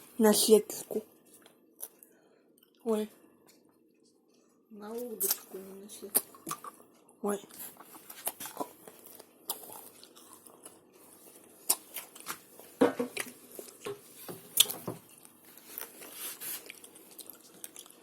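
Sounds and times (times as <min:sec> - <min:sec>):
crunching and chewing: 0:01.3 - 0:02.8, 0:05.2 - 0:18.0.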